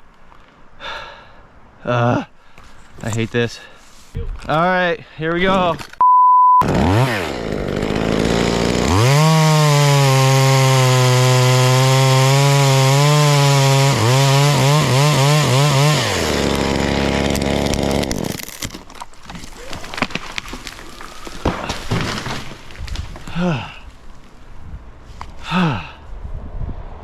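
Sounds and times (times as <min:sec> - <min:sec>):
censor bleep: 0:06.0 - 0:06.6
chainsaw revving and cutting wood: 0:06.6 - 0:18.8.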